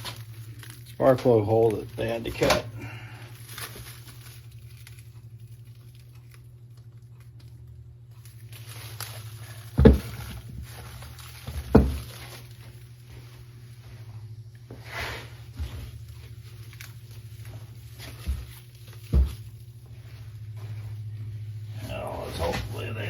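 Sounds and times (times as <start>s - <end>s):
packing material rustling: 0.0s - 13.5s, 14.8s - 23.0s
heavy thuds: 9.7s - 10.5s.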